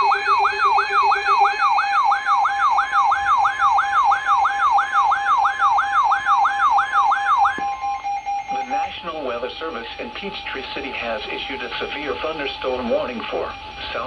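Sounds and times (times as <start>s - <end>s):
falling siren-like alert sweep: 0.0s - 13.6s.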